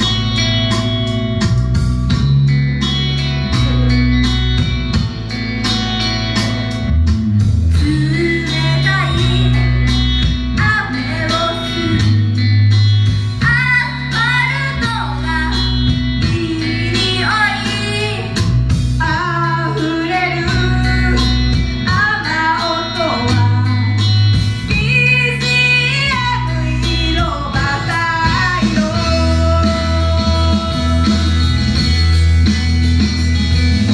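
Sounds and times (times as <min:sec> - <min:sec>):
pop rock band playing: 0:00.0 - 0:33.9
woman singing: 0:07.7 - 0:12.5, 0:13.3 - 0:32.0.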